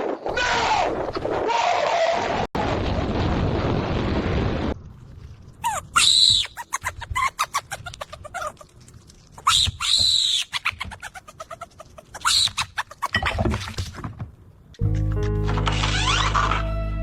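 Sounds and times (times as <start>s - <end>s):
bird squawking: 5.6s - 8.7s, 9.4s - 13.2s, 15.6s - 16.7s.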